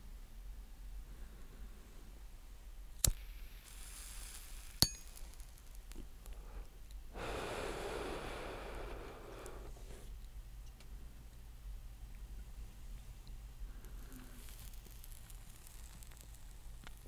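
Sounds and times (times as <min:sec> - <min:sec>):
faint lighter hiss: 0:02.8 - 0:11.4, 0:12.9 - 0:17.0
breathy draw on cigarette: 0:06.4 - 0:10.1, 0:13.7 - 0:14.9.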